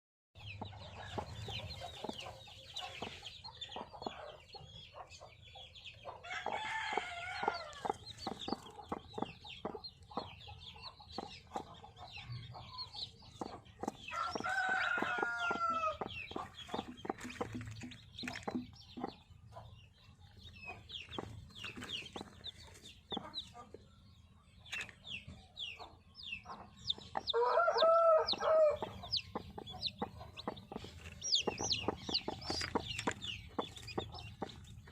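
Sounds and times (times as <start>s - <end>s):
chicks peeping: 0.4s - 34.9s
hen clucking: 0.6s - 5.3s, 6.0s - 19.7s, 25.8s - 34.9s
rooster crowing: 6.3s - 7.8s, 14.1s - 16.0s, 27.4s - 28.8s.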